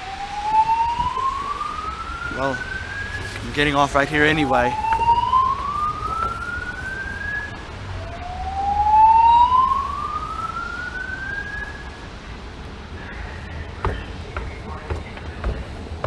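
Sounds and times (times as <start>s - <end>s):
fire alarm whoop tone: 0.0s - 12.2s.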